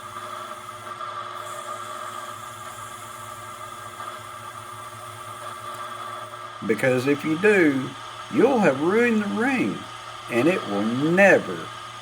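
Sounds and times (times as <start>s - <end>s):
small motor whirring: 0.0s - 6.6s.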